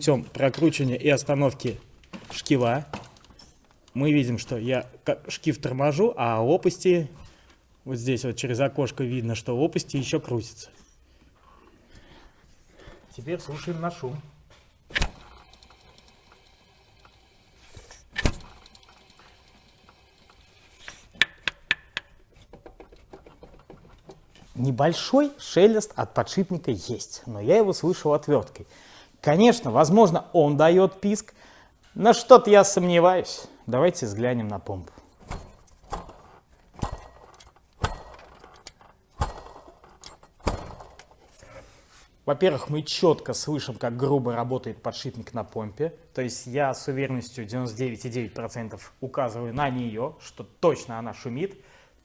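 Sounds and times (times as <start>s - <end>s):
pulley spinning with rough rustle: 15.0s - 21.4s, 35.1s - 42.0s.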